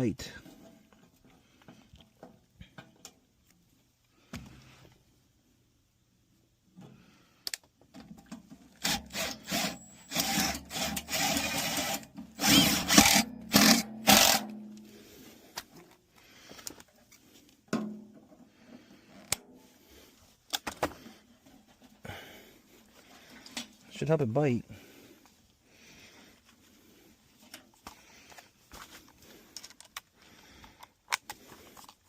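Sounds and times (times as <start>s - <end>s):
power drill driving screws: 8.8s - 14.6s.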